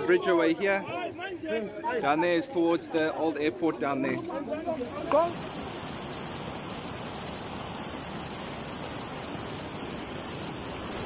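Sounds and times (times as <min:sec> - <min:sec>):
floodwater rushing: 0:04.7 - 0:11.0.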